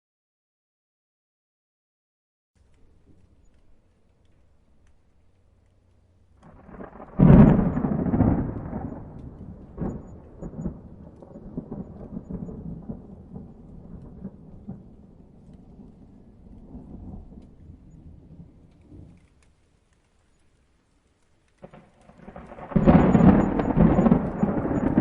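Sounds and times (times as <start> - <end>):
thunder clap and rumble: 6.4 - 19.5, 21.6 - 25.0.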